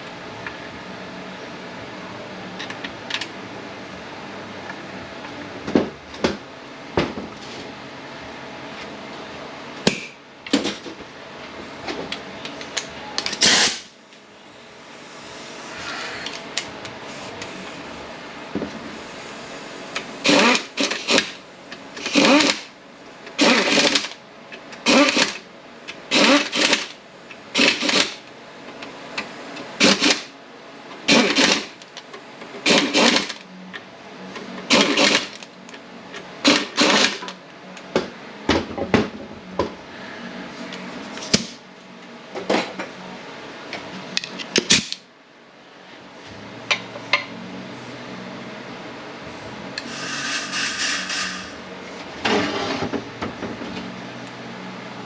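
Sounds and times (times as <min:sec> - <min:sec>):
steady background hum: 0:00.0 - 0:55.0
compressed-air tool bursts: 0:20.2 - 0:21.2, 0:49.8 - 0:51.6.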